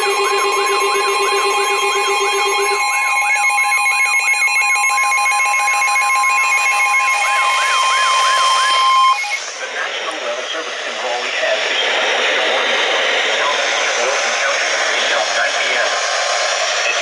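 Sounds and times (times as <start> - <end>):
long steady alert tone: 0.0 - 9.4
low pulsing beep: 0.0 - 9.4
voice broadcast: 4.9 - 17.0.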